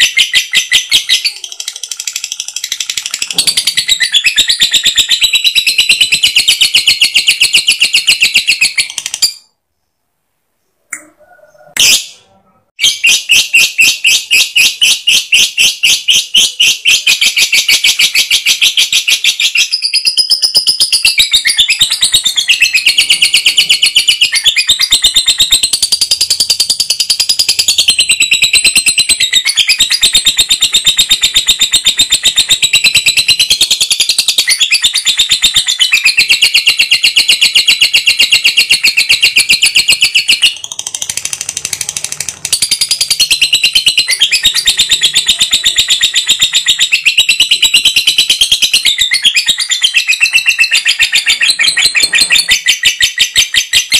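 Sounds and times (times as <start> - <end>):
lovebird chattering trill: 12.8 - 53.9.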